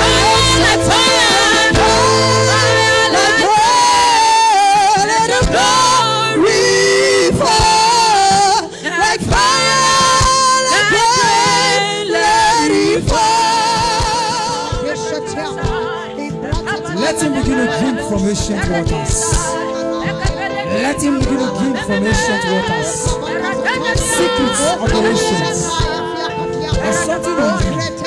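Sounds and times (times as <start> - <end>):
person singing long held notes: 0.0 - 15.0
sustained backing music: 0.0 - 28.0.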